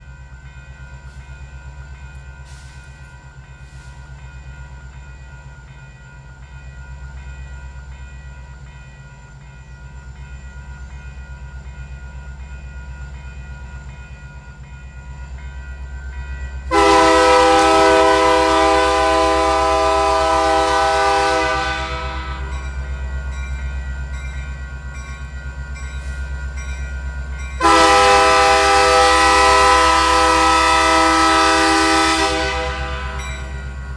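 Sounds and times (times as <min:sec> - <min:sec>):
diesel locomotive rumbling: 0:00.0 - 0:33.9
locomotive air horn blast: 0:16.7 - 0:22.5, 0:27.6 - 0:33.5.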